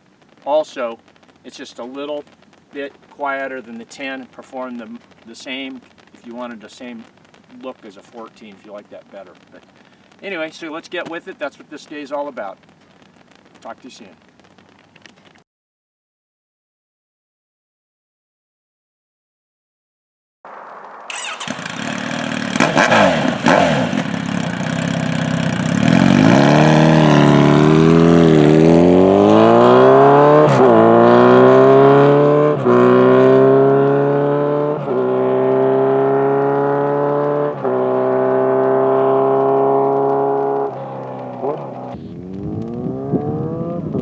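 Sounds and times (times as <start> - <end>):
sharp engine clatters: 21.1 - 26.3
motorcycle engine revving: 21.1 - 44.0.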